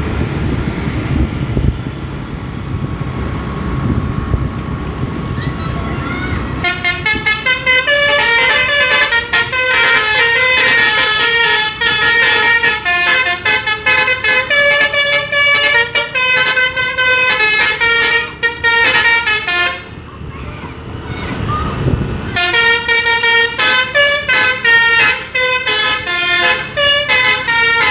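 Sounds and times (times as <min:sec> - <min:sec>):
multi-tone bus air horn tune: 0:06.6 - 0:20.0, 0:22.3 - 0:27.9.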